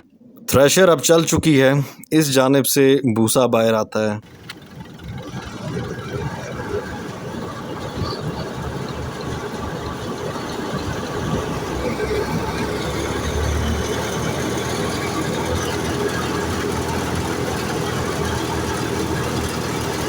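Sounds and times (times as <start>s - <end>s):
thresher engine drone: 4.2s - 20.0s.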